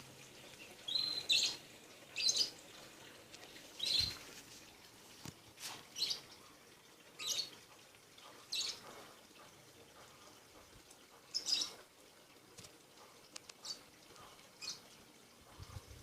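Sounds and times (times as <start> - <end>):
small bird chirping: 0.8 - 1.6, 3.8 - 4.2.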